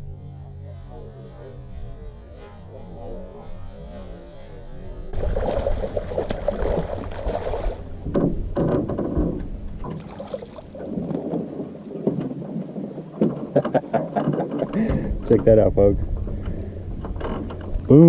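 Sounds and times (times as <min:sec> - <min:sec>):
water splashing: 0:05.1 - 0:08.1, 0:09.8 - 0:14.8
wind buffeting microphone: 0:05.1 - 0:17.9
sharp knocks: 0:08.0 - 0:10.0.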